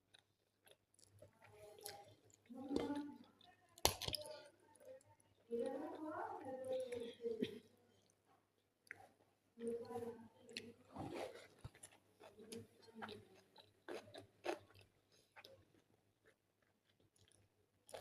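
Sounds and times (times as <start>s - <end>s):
person chewing wetly: 0.1s - 4.5s, 10.5s - 18.0s.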